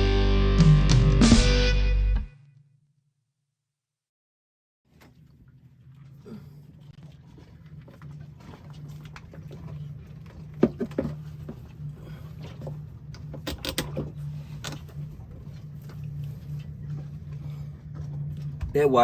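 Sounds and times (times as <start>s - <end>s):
steady low hum: 5.4s - 19.0s.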